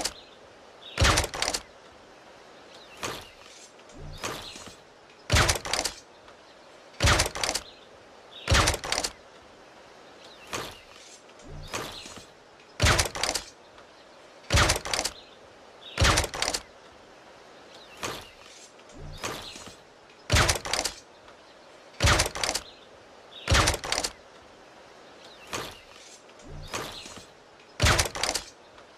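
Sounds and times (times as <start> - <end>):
air rifle shots: 1.0 - 1.6, 5.3 - 6.0, 7.0 - 7.7, 8.5 - 9.2, 12.8 - 13.5, 14.5 - 15.2, 16.0 - 16.6, 20.3 - 21.0, 22.0 - 22.7, 23.5 - 24.2, 27.8 - 28.5.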